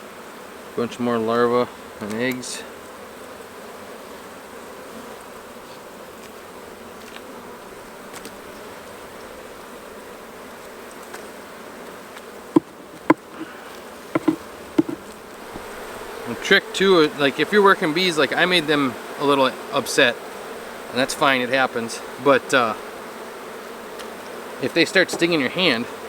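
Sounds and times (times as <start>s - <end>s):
bees buzzing: 0.0s - 26.0s
sharp knocks: 12.6s - 13.4s, 14.1s - 15.0s.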